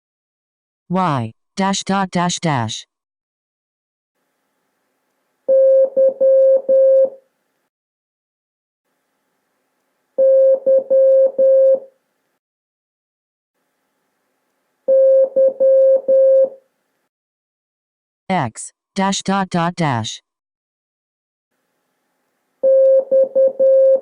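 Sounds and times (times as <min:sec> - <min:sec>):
morse code beeps: 0:05.5 - 0:07.2, 0:10.2 - 0:11.8, 0:14.9 - 0:16.6, 0:22.6 - 0:24.0.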